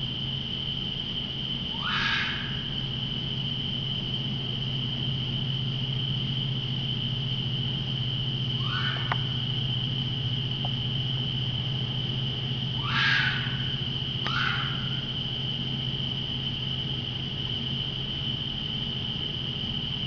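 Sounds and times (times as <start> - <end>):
low hum: 0.0 - 20.0
night insects droning: 0.0 - 20.0
harsh animal calls: 1.7 - 2.8, 8.6 - 9.4, 12.7 - 15.1.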